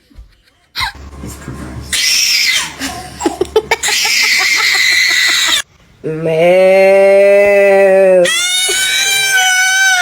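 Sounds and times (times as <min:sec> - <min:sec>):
shrill screams: 0:01.9 - 0:02.8, 0:03.8 - 0:05.6, 0:08.2 - 0:10.0.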